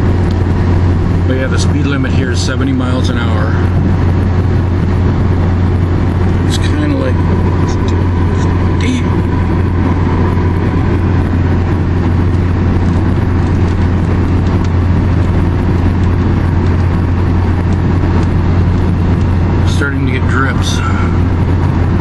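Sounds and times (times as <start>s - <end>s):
car road and engine drone: 0.0s - 22.0s.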